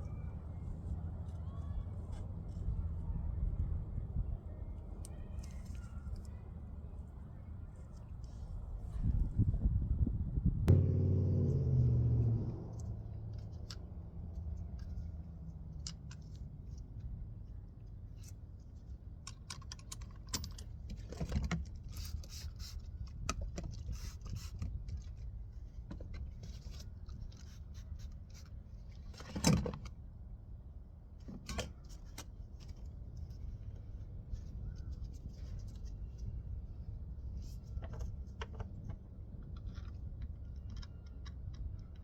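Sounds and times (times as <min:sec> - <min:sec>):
low steady hum: 0:00.0 - 0:19.2.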